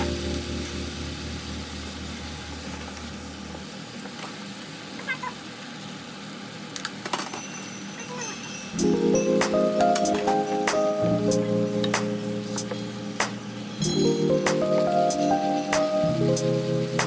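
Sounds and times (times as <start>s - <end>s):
background music: 0.0s - 2.6s, 8.8s - 17.0s
food sizzling in frying pan: 0.0s - 17.0s.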